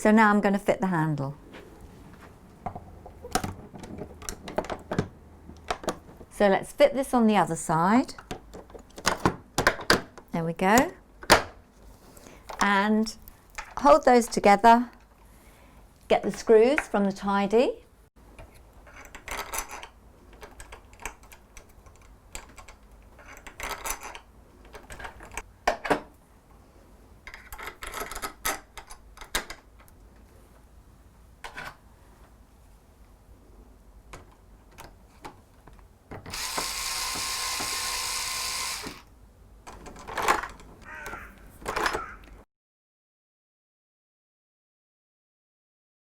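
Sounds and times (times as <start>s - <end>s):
power screwdriver running: 36.3s - 39.1s.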